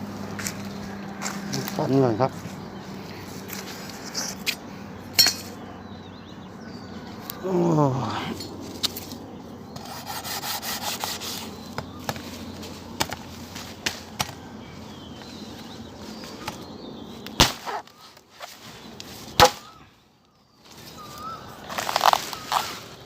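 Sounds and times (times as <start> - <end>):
knife chopping plant stems: 12.9 - 14.4, 17.3 - 18.6, 19.3 - 19.8.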